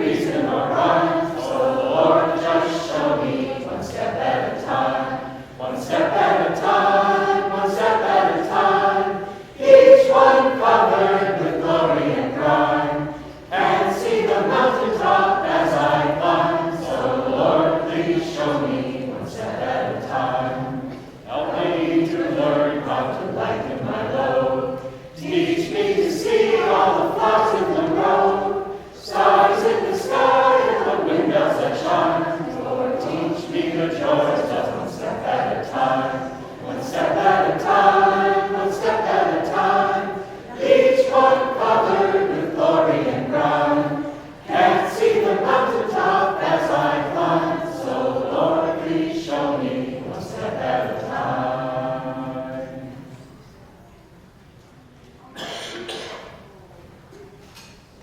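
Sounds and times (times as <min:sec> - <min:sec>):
vocal group singing unaccompanied: 0:00.0 - 0:53.4
singers breathing: 0:09.2 - 0:09.6, 0:13.1 - 0:13.5.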